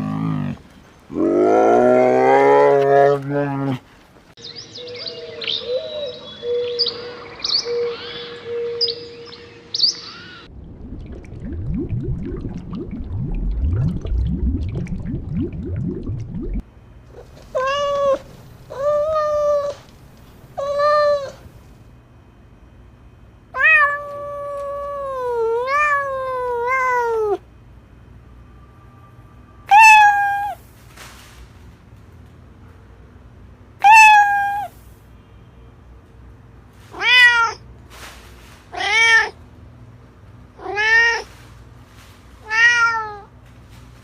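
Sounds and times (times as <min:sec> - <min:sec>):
low sweeps rising in pitch: 0:10.5 - 0:16.6
cat meowing: 0:23.6 - 0:27.4, 0:29.7 - 0:30.6, 0:33.8 - 0:34.7, 0:37.0 - 0:37.6, 0:40.6 - 0:41.3, 0:42.4 - 0:43.3.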